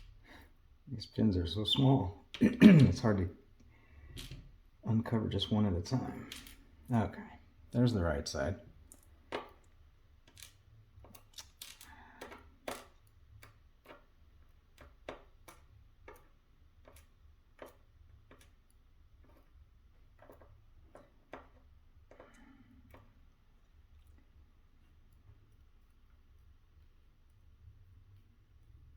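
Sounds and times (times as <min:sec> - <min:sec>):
metal parts rattle: 0:11.2 - 0:12.0.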